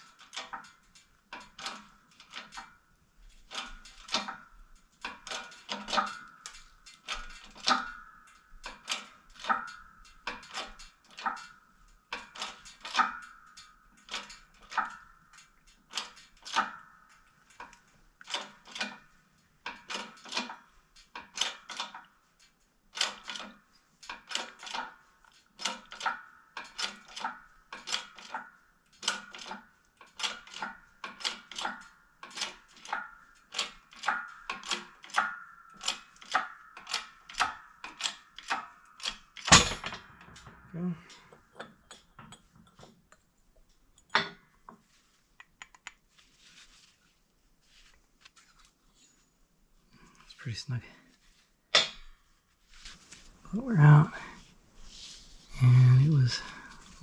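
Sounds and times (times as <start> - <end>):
sharp metal clicks: 45.4 - 46.0.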